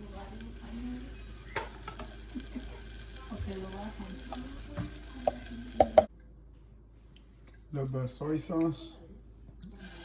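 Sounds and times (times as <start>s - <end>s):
food sizzling in oil: 0.0s - 6.1s, 9.8s - 10.0s
utensil knocking against pan: 5.2s - 6.1s.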